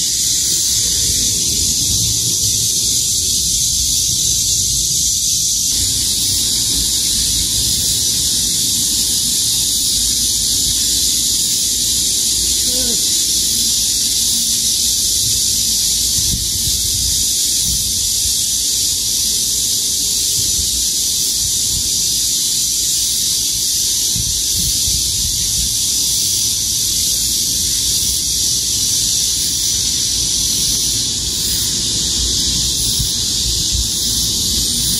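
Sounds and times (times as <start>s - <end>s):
cicadas and insects buzzing: 0.0s - 34.9s
low rumble: 0.7s - 4.8s.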